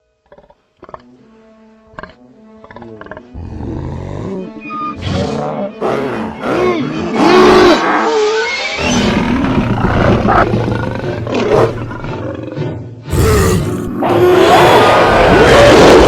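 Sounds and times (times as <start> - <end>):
music: 0.0 - 16.0
animal roars: 2.8 - 16.0.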